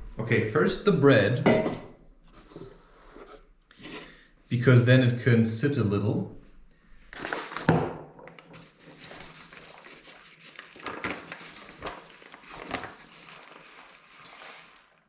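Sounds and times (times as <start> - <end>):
rustling and crinkling: 7.0 - 7.7, 8.3 - 15.0.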